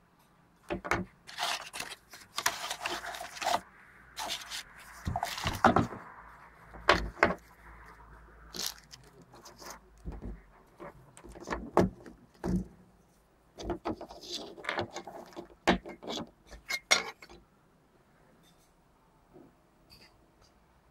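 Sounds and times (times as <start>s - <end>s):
packaging rustling: 1.2s - 6.0s, 8.5s - 10.2s.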